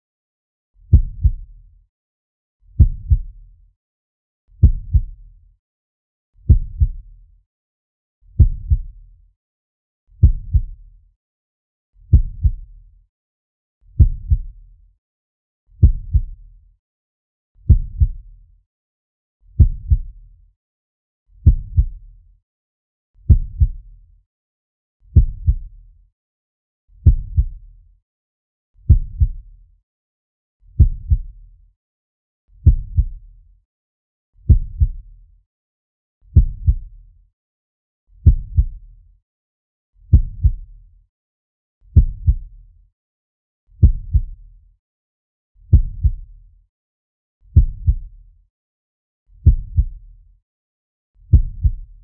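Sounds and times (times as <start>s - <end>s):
heartbeat lub-dub thumps: 0.9s - 1.4s, 2.8s - 3.3s, 4.6s - 5.2s, 6.5s - 7.0s, 8.4s - 8.9s, 10.2s - 10.8s, 12.1s - 12.6s, 14.0s - 14.5s, 15.8s - 16.4s, 17.7s - 18.2s, 19.6s - 20.1s, 21.4s - 22.0s, 23.3s - 23.8s, 25.2s - 25.7s, 27.0s - 27.6s, 28.9s - 29.4s, 30.8s - 31.3s, 32.6s - 33.2s, 34.5s - 35.0s, 36.4s - 36.9s, 38.2s - 38.8s, 40.1s - 40.6s, 42.0s - 42.5s, 43.8s - 44.4s, 45.7s - 46.2s, 47.6s - 48.1s, 49.4s - 49.9s, 51.3s - 51.9s.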